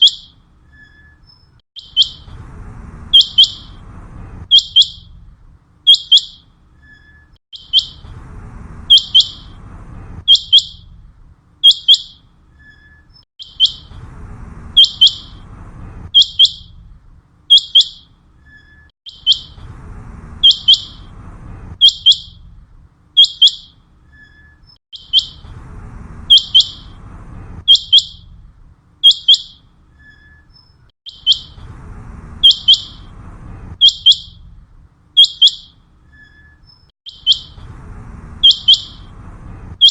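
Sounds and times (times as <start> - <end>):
faint background rumble: 2.2 - 5.8, 6.5 - 11.6, 12.2 - 17.5, 19.4 - 23.2, 23.8 - 29.0, 31.4 - 35.2, 37.4 - 39.9
quail calling: 31.1 - 31.6, 32.4 - 33.1, 37.1 - 37.6, 38.4 - 39.1.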